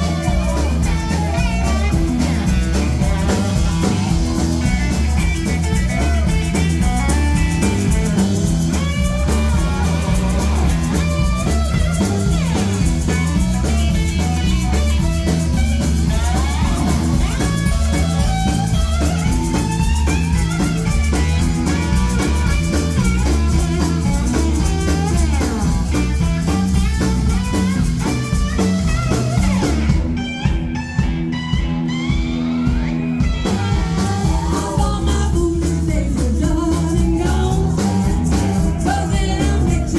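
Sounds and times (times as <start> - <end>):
electric guitar solo: 0.0 - 34.4
bass guitar: 0.0 - 39.9
drum kit: 0.0 - 39.9.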